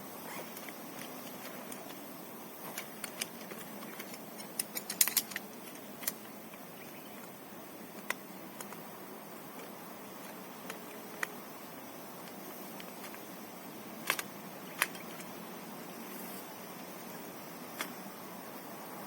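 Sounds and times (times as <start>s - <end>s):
small hard objects clicking: 0.5s - 8.9s, 14.0s - 15.4s.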